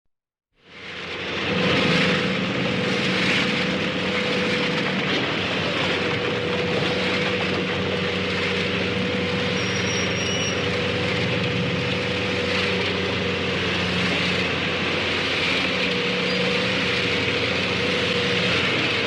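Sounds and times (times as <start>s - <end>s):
engine humming: 0.6s - 19.0s
rushing machinery noise: 0.6s - 19.0s
faint high whistle: 9.5s - 10.6s.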